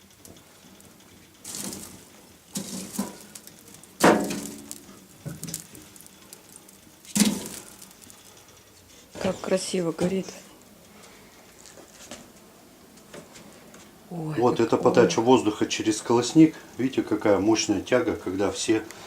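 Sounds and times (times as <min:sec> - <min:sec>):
logs knocking against metal firebox: 0:01.4 - 0:08.1.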